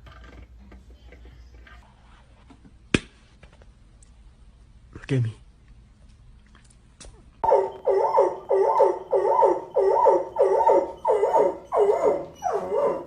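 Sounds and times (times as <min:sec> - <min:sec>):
dog barking: 0:07.4 - 0:13.0.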